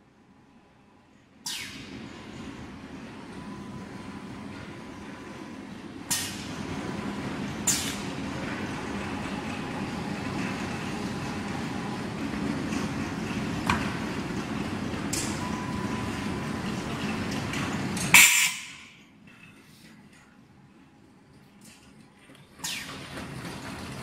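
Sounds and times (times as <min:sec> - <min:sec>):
machine hum: 0:01.8 - 0:18.2.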